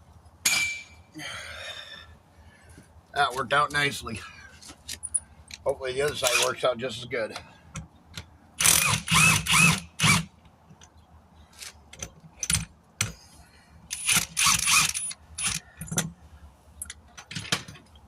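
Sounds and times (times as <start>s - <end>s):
metal tools clanking and scraping: 0.4s - 1.0s, 4.5s - 7.6s.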